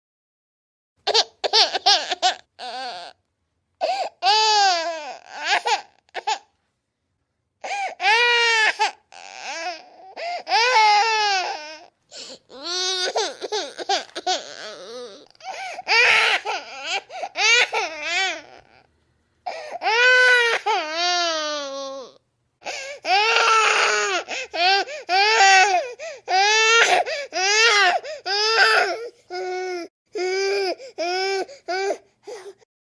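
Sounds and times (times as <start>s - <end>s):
baby crying: 1.1s - 3.2s, 3.8s - 6.5s, 7.6s - 18.9s, 19.5s - 32.7s.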